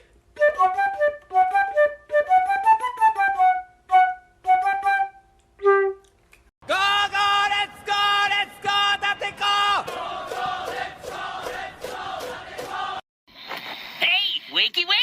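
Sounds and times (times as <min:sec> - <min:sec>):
flute ringtone melody: 0:00.4 - 0:06.1
fuller-toned melody: 0:00.4 - 0:06.2.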